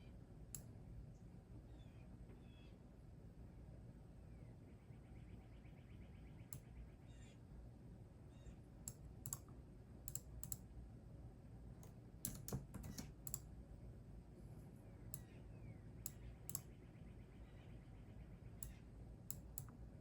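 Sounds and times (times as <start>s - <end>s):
keyboard typing: 12.3s - 13.4s.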